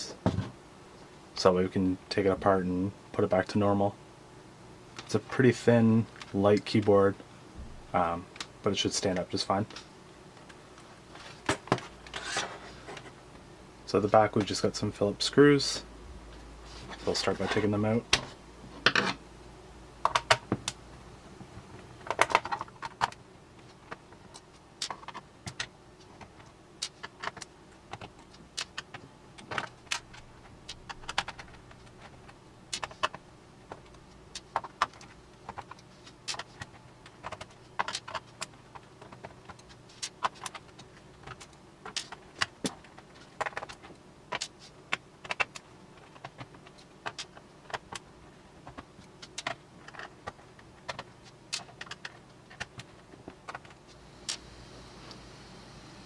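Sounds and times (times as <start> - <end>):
keyboard plastic clicks and rattles: 20.0 - 20.8, 21.7 - 54.4.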